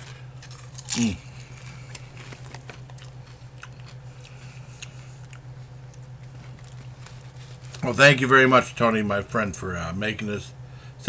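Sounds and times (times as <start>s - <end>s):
crunching clicks: 0.0s - 7.9s
person chewing popcorn: 0.0s - 8.8s
steady low hum: 0.0s - 11.0s.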